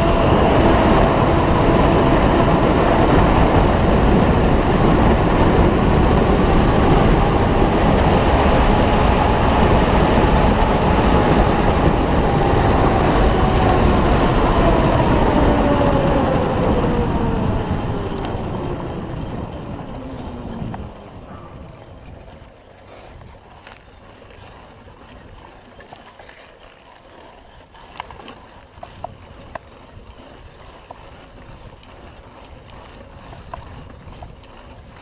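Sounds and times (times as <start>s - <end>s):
wind rushing over microphone: 0.0s - 25.6s, 28.8s - 35.0s
faint bicycle whine: 0.0s - 26.8s.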